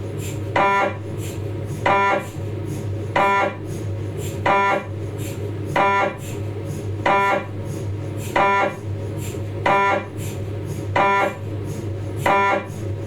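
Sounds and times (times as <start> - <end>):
steady low hum: 0.0 - 13.0
mri scanner buzzing beep: 3.2 - 3.6, 4.5 - 4.9, 5.8 - 6.3, 7.1 - 7.5, 8.4 - 8.8, 9.7 - 10.2, 10.9 - 11.4, 12.3 - 12.8.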